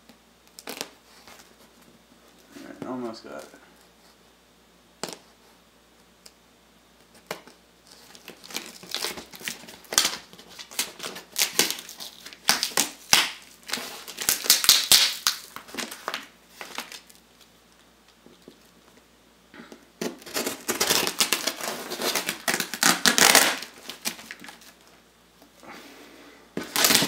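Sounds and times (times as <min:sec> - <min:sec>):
cardboard box torn open: 0:20.0 - 0:24.7, 0:26.6 - 0:27.0.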